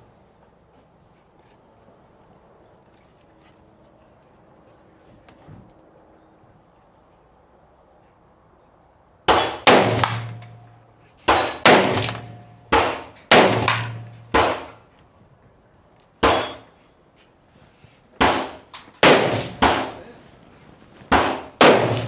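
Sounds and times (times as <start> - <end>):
rifle shots: 9.3 - 10.6, 11.3 - 14.8, 16.2 - 16.6, 18.2 - 20.0, 21.1 - 22.0.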